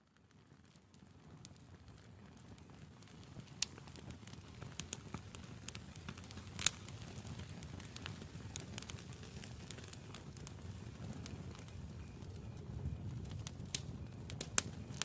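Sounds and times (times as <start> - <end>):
campfire crackling and popping: 0.0 - 15.0
low hiss of flame: 1.0 - 15.0.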